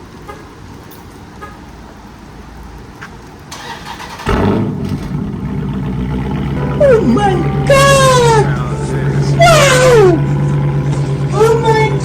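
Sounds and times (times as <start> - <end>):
engine cranking: 3.5 - 12.0
loud engine idling: 3.6 - 12.0.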